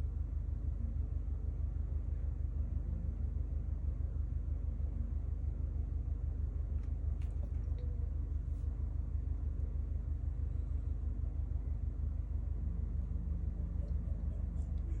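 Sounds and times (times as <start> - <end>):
low background hum: 0.0 - 15.0
faint light ticks: 6.7 - 8.1.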